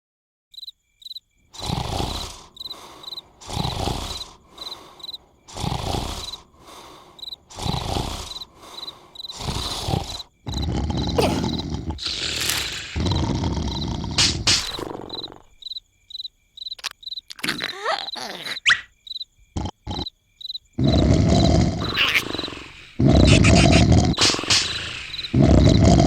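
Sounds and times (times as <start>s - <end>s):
crickets chirping: 0.5s - 26.0s
cartoon character snoring: 1.6s - 15.6s, 17.4s - 18.7s, 19.6s - 20.1s, 20.8s - 26.0s.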